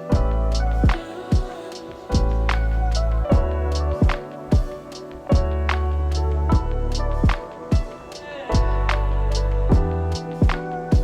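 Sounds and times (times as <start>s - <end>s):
deep falling bass drum thumps: 0.1s - 1.0s, 2.2s - 4.7s, 5.3s - 7.9s, 8.6s - 11.0s.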